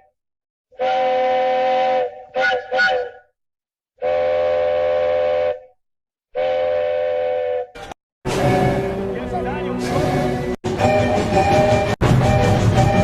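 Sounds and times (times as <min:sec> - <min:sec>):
steam train chime whistle: 0:08.3 - 0:13.0.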